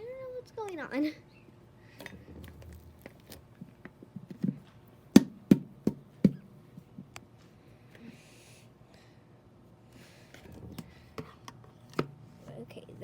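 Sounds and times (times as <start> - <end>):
knocking on plastic bottle: 5.2 - 6.4.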